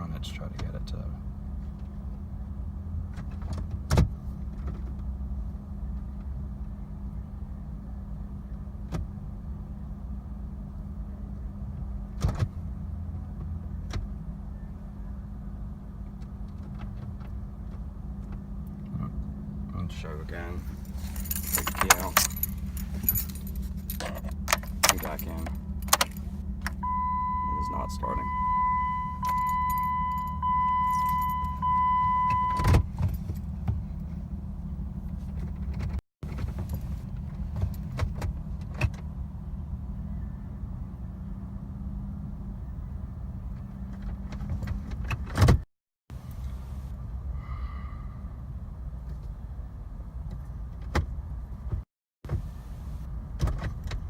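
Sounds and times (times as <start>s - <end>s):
low hum in car cabin: 0.0s - 45.6s
low steady hum: 19.8s - 37.8s
car warning tone: 19.9s - 35.2s
keys jingling: 20.2s - 33.6s
gear selector clicks: 20.7s - 27.4s.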